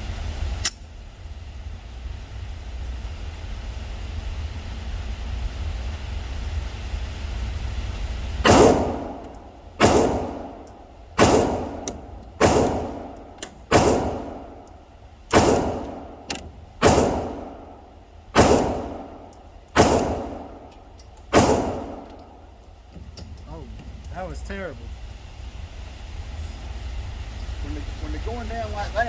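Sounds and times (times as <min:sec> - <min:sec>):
pistol gunshots: 0:08.4 - 0:14.6, 0:15.3 - 0:17.8, 0:18.4 - 0:20.7, 0:21.3 - 0:22.3.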